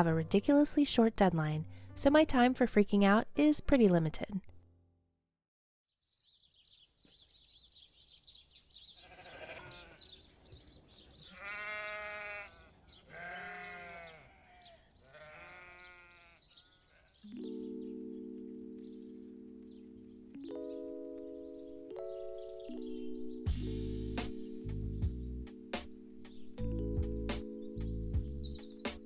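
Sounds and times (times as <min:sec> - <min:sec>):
sheep bleating: 0:09.0 - 0:10.3, 0:11.2 - 0:17.2
held musical chord: 0:17.3 - 0:28.9.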